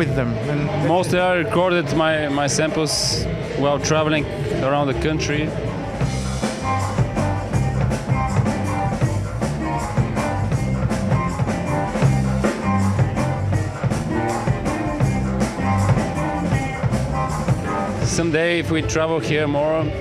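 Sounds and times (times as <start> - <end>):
steady drum beat: 0.0 - 18.7
band music: 0.0 - 20.0
moving bass line: 0.0 - 20.0.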